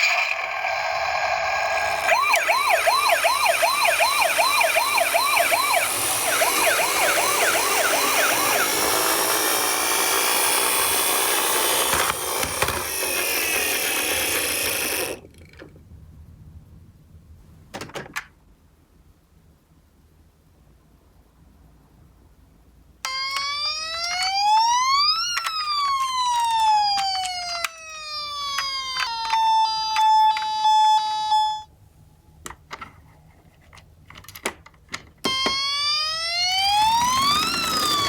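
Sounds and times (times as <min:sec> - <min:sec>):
toy ambulance sirens: 0:00.0 - 0:15.2, 0:23.1 - 0:31.7, 0:35.2 - 0:38.0.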